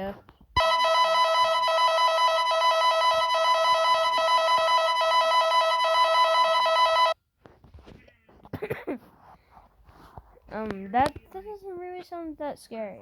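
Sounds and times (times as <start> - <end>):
electronic alarm tone chord: 0.6 - 7.2.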